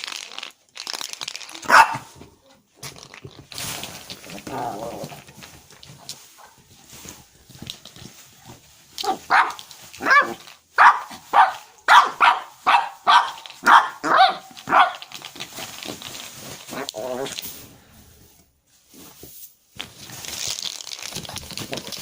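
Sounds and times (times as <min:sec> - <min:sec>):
puppy yapping: 0:01.6 - 0:02.1, 0:09.0 - 0:15.1.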